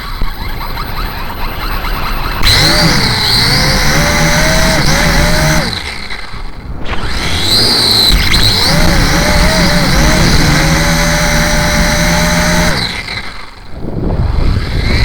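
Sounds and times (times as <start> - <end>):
quadcopter motors whining: 0.0 - 15.0
wind rush: 5.7 - 15.0.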